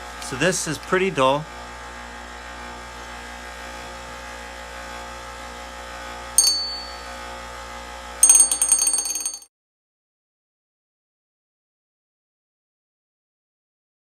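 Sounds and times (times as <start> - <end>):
bench grinder motor hum: 0.0 - 8.2.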